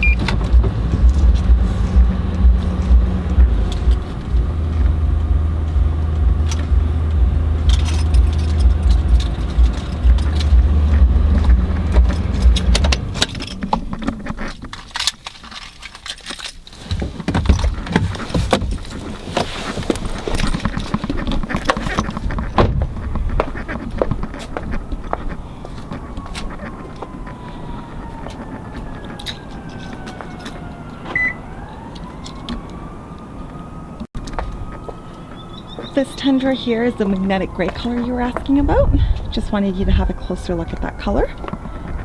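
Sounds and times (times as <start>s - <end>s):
low rumble inside vehicle cab: 0.0s - 14.9s, 16.8s - 31.6s
keys jangling: 6.4s - 10.9s, 11.9s - 13.7s, 14.5s - 16.8s.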